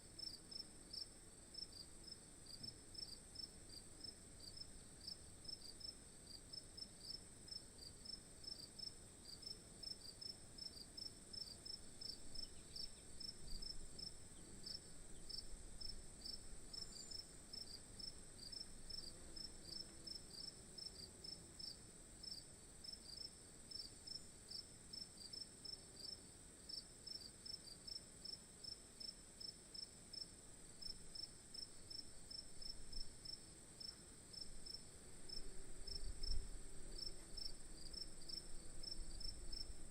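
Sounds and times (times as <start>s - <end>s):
steady high-pitched hiss: 0.0s - 39.9s
insects chirping: 11.0s - 20.5s, 30.1s - 39.9s.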